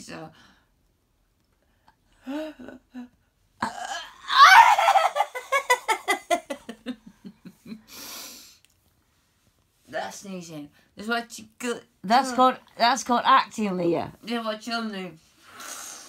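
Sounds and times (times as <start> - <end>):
person laughing: 4.4 - 7.8.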